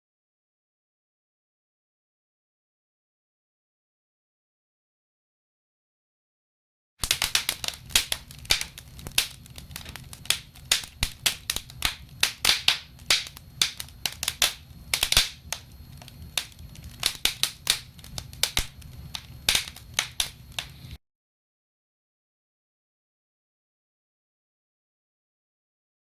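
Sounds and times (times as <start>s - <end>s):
campfire pops and snaps: 7.0s - 21.0s
low rumble of burning fire: 7.0s - 21.0s.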